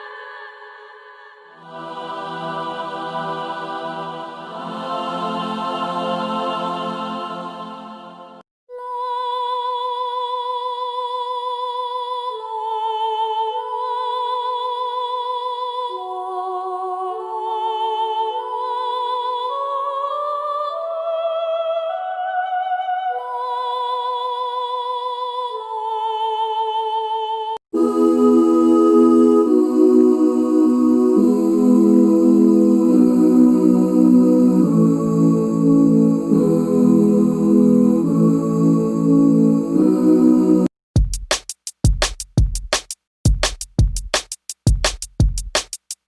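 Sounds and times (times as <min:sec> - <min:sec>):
chord-like ambient music: 0:27.8 - 0:40.7.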